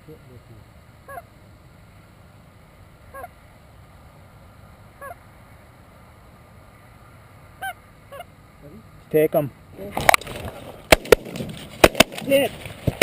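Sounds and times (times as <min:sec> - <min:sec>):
low background noise: 0:00.0 - 0:13.0
goose honking: 0:01.0 - 0:01.3, 0:03.1 - 0:03.4, 0:05.0 - 0:05.2, 0:07.6 - 0:08.3.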